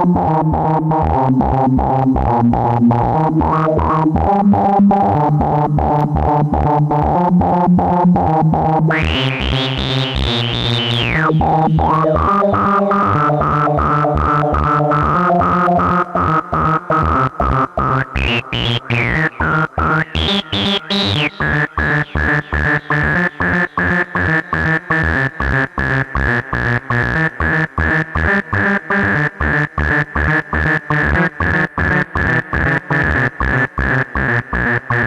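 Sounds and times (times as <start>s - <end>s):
analog synthesizer sequence: 0.0s - 25.9s
high synth tone sweeping: 9.0s - 12.4s, 18.2s - 22.5s.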